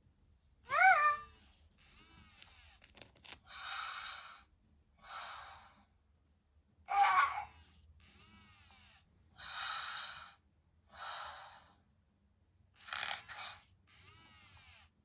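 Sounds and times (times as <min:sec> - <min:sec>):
toy snoring sounds: 0:00.7 - 0:05.7, 0:06.9 - 0:10.4, 0:12.8 - 0:15.0.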